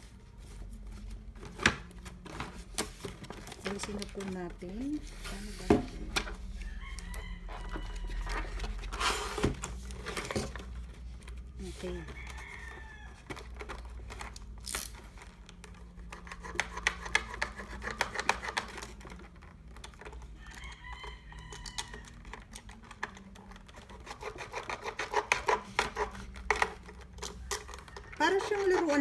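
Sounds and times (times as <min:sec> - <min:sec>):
rooster crowing: 0:06.5 - 0:09.0, 0:11.8 - 0:13.5, 0:20.3 - 0:22.3, 0:27.4 - 0:29.0.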